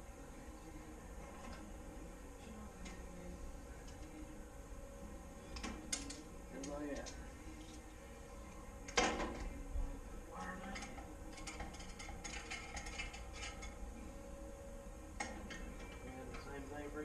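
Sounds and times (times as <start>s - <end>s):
small metal clicks and knocks: 5.5s - 7.2s, 10.4s - 13.8s.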